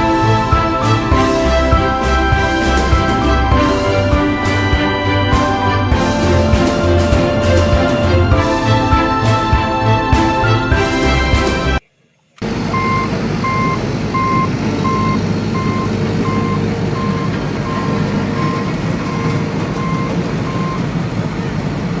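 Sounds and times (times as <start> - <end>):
engine rumble: 0.0 - 11.8, 12.4 - 22.0
music: 0.0 - 11.8
reversing alarm beeping: 12.6 - 21.8.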